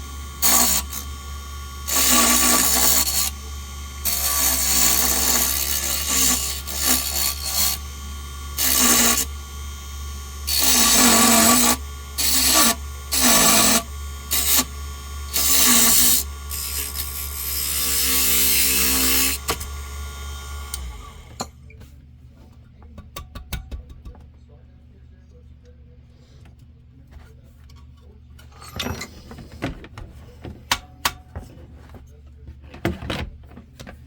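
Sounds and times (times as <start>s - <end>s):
tool scraping spinning wood: 0.0s - 21.4s
wood lathe humming: 0.0s - 21.4s.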